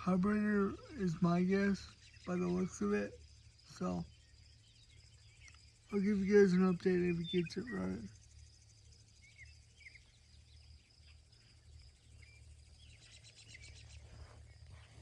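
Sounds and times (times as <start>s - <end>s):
faint bird chirps: 0.0s - 15.0s
high insect trill: 0.0s - 15.0s
low hum: 0.0s - 15.0s.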